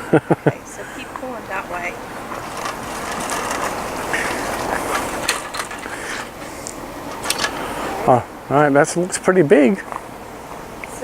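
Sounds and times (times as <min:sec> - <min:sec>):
frame joints clicking and rattling: 0:02.2 - 0:06.4, 0:07.1 - 0:07.7.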